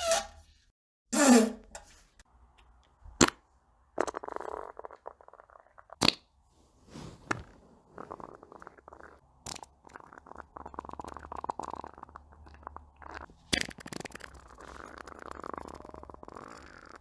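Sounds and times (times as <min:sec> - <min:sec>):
rattly farts: 0:04.0 - 0:06.2, 0:07.3 - 0:17.0.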